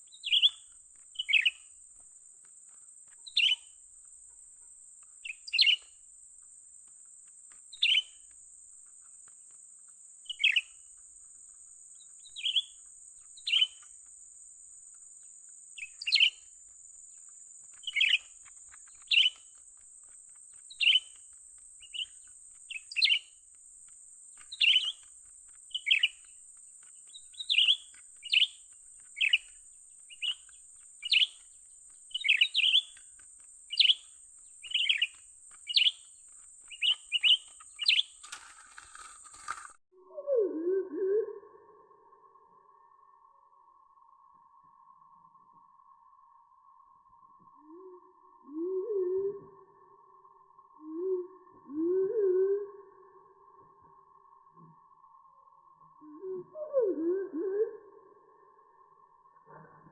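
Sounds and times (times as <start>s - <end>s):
bird chirping calls: 0.0s - 1.7s, 3.1s - 3.8s, 4.6s - 5.9s, 7.7s - 8.3s, 10.3s - 10.8s, 11.9s - 13.9s, 15.8s - 16.5s, 17.7s - 19.6s, 20.5s - 23.4s, 24.4s - 31.5s, 32.1s - 41.8s.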